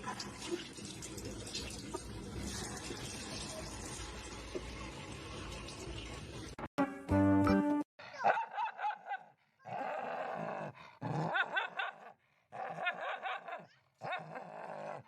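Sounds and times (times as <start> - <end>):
dog barking and growling: 8.1 - 15.0.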